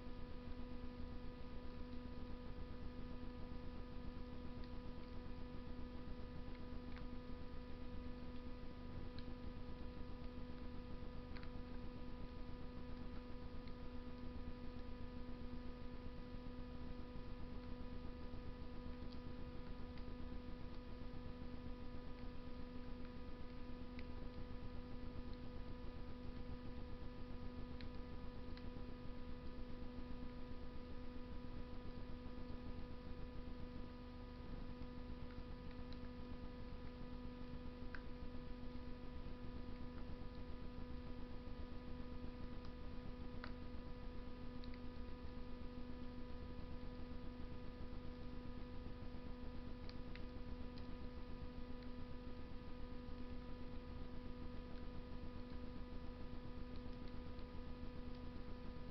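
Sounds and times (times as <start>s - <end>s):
steady electrical hum: 0.0s - 58.9s
wood crackling in stove: 0.1s - 58.9s.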